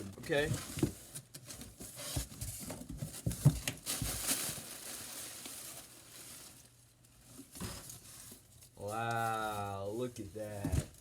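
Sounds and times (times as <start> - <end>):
packaging rustling and crinkling: 0.0 - 11.0.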